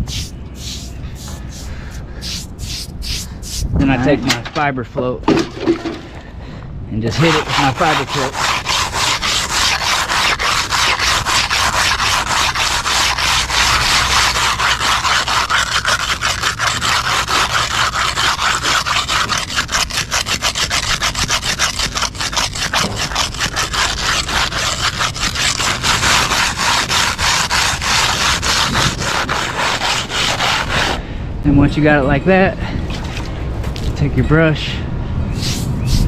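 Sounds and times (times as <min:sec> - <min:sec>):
float scrubbing concrete: 0:07.0 - 0:31.0.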